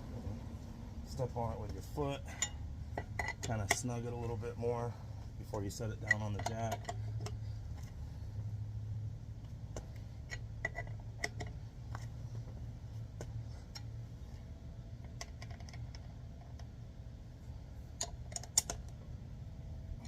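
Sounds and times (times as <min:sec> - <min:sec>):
steady low hum: 0:00.0 - 0:20.0
lug wrench clicking on bolts: 0:01.6 - 0:04.4, 0:05.6 - 0:08.0, 0:09.4 - 0:12.2, 0:15.0 - 0:16.8, 0:17.9 - 0:19.0.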